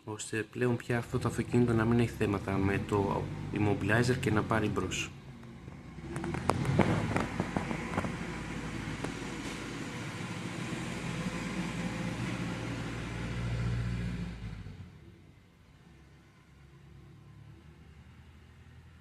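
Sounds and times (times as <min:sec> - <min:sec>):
car engine idling: 0:00.9 - 0:13.2.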